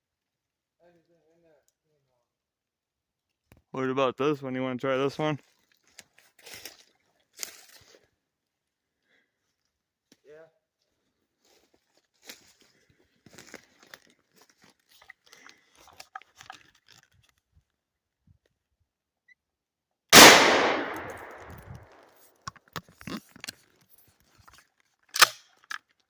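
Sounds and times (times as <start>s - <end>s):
gunshot echoing: 20.2s - 21.9s.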